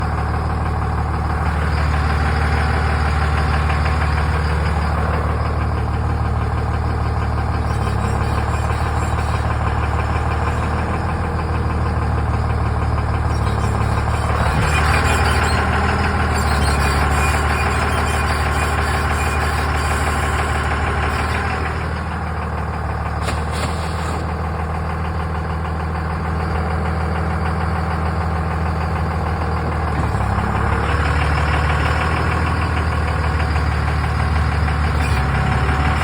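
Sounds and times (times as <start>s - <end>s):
diesel engine clatter: 0.0s - 36.0s
harsh high-pitched noise: 7.7s - 10.9s, 13.2s - 21.6s.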